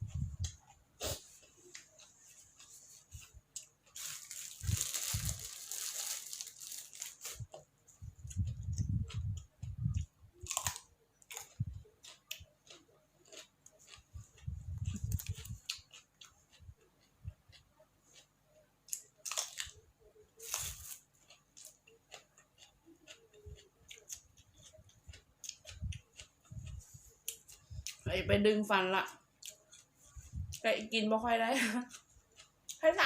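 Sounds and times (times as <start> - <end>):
chewing and crunching: 0.0 - 28.1, 29.1 - 31.0, 31.8 - 33.0
rustling or tearing: 3.9 - 7.6, 20.4 - 21.0.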